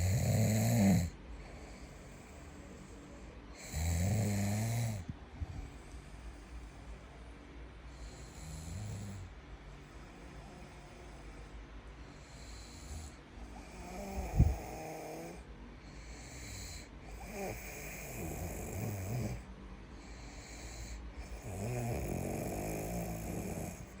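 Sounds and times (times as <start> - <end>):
person snoring: 0.0 - 2.4, 3.6 - 5.1, 8.0 - 9.3, 12.2 - 19.4, 20.0 - 24.0.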